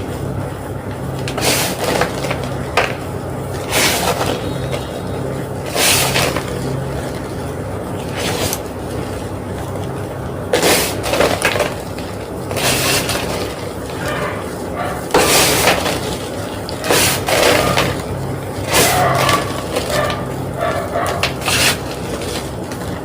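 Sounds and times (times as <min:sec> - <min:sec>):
steady low hum: 0:00.0 - 0:23.0
chalk block crunching: 0:08.0 - 0:22.9.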